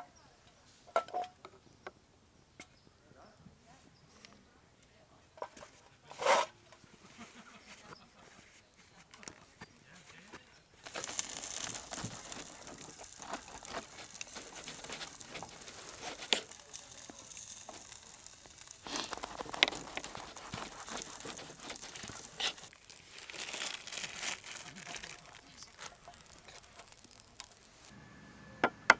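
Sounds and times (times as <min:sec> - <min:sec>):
crinkling and rustling handling: 0:05.4 - 0:27.9.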